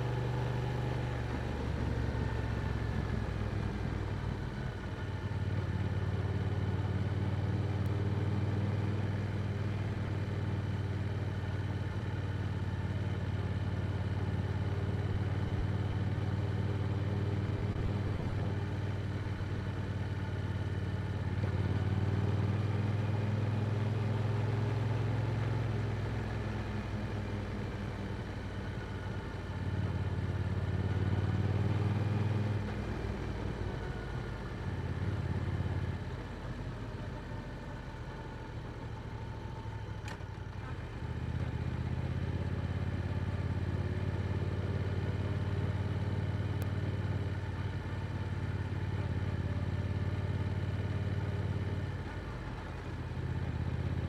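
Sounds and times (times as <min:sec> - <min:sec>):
motorcycle engine accelerating: 0:13.6 - 0:37.2.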